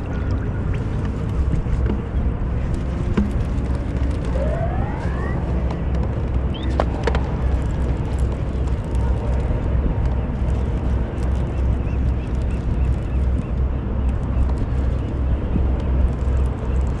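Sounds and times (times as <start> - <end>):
wind buffeting microphone: 0.0 - 17.0
short rising whine: 4.3 - 5.9.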